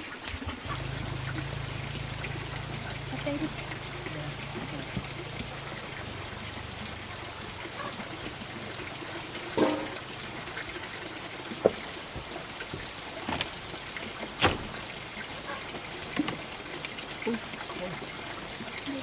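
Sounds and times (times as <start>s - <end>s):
running water: 0.0s - 19.0s
sharp knocks and clatters: 9.5s - 10.0s.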